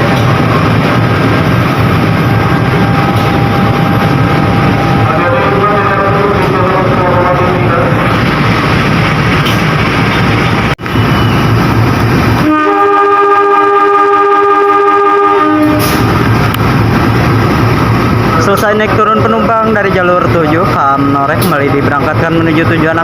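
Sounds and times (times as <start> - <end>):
train rumbling: 0.0 - 23.0
train horn blast: 12.4 - 16.1.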